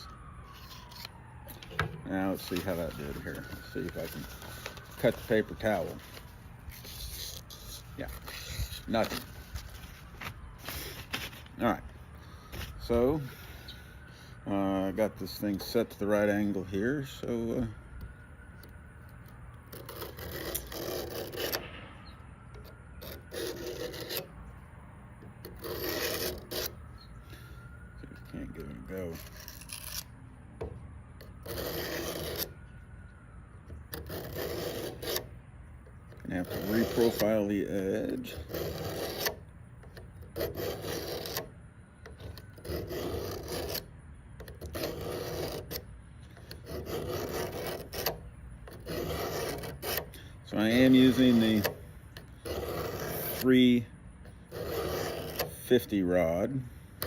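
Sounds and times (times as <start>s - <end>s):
knife rasping on sharpening rod: 22.6s - 24.3s, 25.4s - 26.8s, 29.1s - 30.1s, 31.4s - 32.5s, 33.9s - 35.3s, 36.2s - 39.5s, 40.2s - 41.5s, 42.1s - 56.0s.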